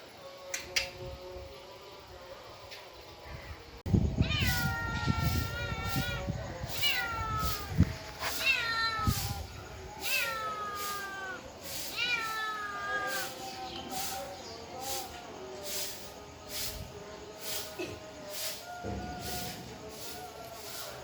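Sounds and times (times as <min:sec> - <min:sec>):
cat meowing: 0:04.2 - 0:13.4.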